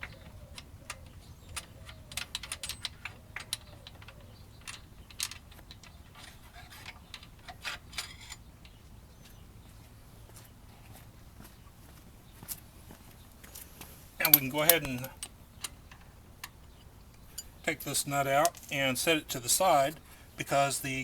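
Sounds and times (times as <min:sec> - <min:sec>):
light metal clicks of tools: 0:00.0 - 0:08.8, 0:13.4 - 0:18.8.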